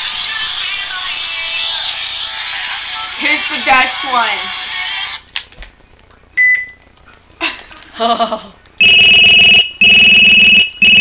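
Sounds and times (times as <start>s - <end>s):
phone ringtone pulses: 8.8s - 11.0s
short beep: 8.8s - 11.0s.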